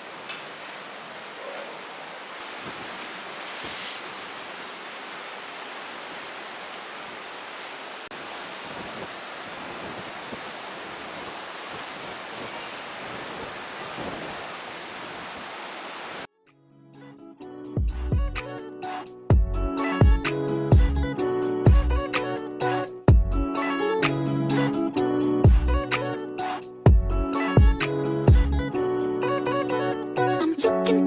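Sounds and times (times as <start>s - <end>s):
steady rushing noise: 0.0s - 16.3s.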